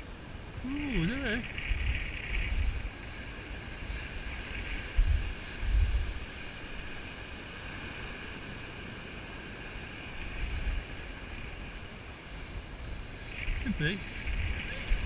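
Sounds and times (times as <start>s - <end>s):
surf on shingle beach: 0.0s - 15.0s
wind buffeting microphone: 0.4s - 7.6s, 8.2s - 15.0s.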